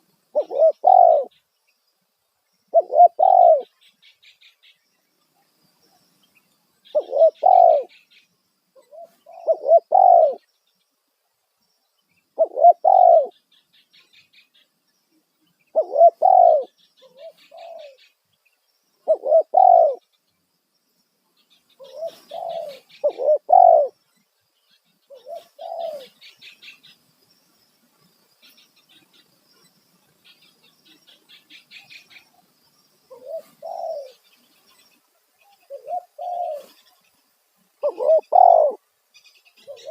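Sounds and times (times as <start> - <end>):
small birds chirping: 0.0 - 39.9
dove cooing: 0.3 - 1.4, 2.7 - 3.7, 6.9 - 8.0, 8.8 - 10.4, 12.4 - 13.4, 15.7 - 18.1, 19.0 - 20.0, 21.8 - 24.0, 25.1 - 26.3, 33.1 - 34.2, 35.6 - 36.9, 37.8 - 38.8, 39.6 - 39.9.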